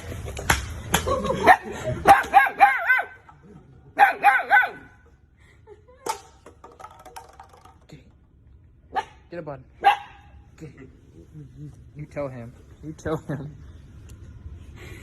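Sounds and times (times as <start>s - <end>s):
dog yipping barks: 2.1s - 3.2s, 4.0s - 5.0s, 9.8s - 10.3s.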